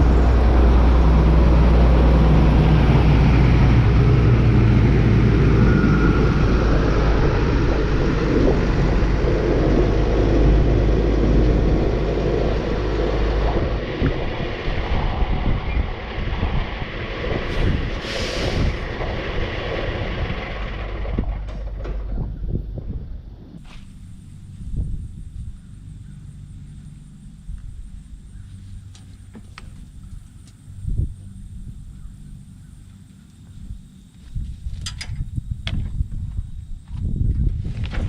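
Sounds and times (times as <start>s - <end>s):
vehicle engine rumbling: 0.0s - 38.0s
short hiss: 17.5s - 18.8s.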